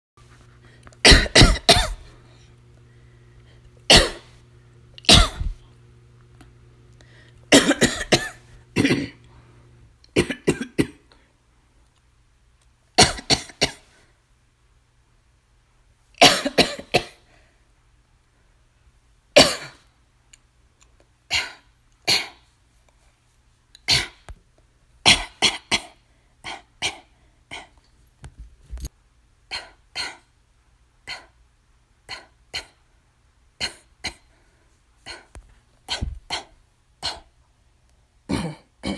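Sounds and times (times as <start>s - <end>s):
woman coughing: 1.0s - 2.1s, 3.9s - 4.3s, 5.0s - 5.6s, 7.5s - 9.2s, 10.1s - 11.1s, 13.0s - 13.9s, 16.2s - 17.2s, 19.4s - 19.8s, 23.9s - 24.2s, 25.1s - 26.0s, 38.3s - 38.9s.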